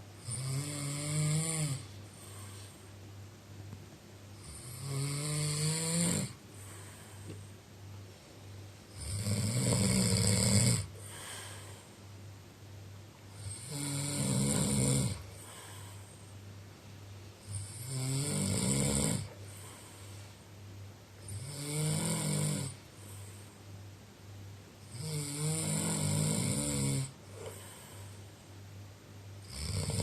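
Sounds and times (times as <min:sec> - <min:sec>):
quiet breathing: 0:00.0 - 0:12.4, 0:13.2 - 0:24.0, 0:24.8 - 0:30.0
loud snoring: 0:00.2 - 0:02.5, 0:04.4 - 0:06.8, 0:08.9 - 0:11.6, 0:13.3 - 0:15.9, 0:17.4 - 0:19.8, 0:21.2 - 0:23.2, 0:24.9 - 0:27.8, 0:29.4 - 0:30.0.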